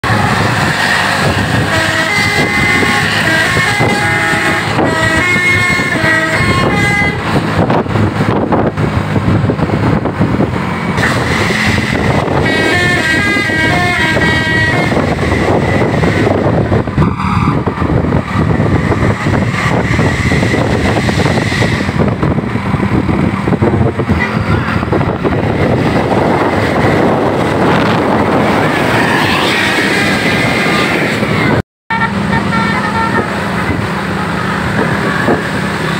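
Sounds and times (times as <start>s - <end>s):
bus engines and traffic: 0.0s - 35.9s
musical bus air horns: 0.1s - 7.5s, 11.0s - 17.6s, 20.0s - 22.1s, 31.9s - 35.5s.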